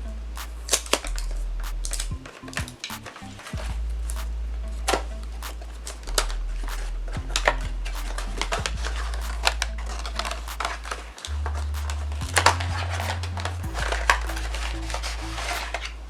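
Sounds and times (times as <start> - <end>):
background music with deep bass: 0.0 - 16.0.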